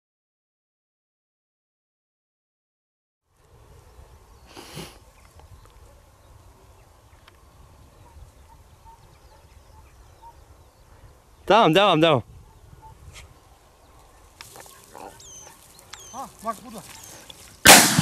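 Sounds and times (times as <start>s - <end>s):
wind rumble on microphone: 12.2s - 13.5s.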